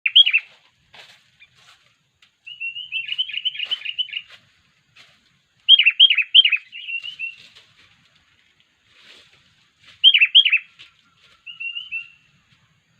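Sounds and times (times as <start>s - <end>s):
bulbul chirping: 0.0s - 0.5s, 5.7s - 7.4s, 10.0s - 10.7s.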